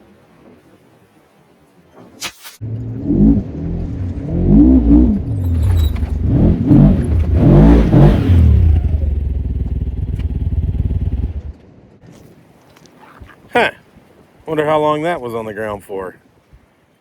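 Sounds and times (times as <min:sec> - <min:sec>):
utility vehicle engine revving: 0:02.6 - 0:11.6.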